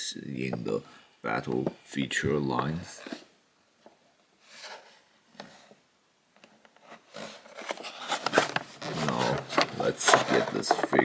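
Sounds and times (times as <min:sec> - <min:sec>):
packaging rubbing and rustling: 0:06.8 - 0:11.0.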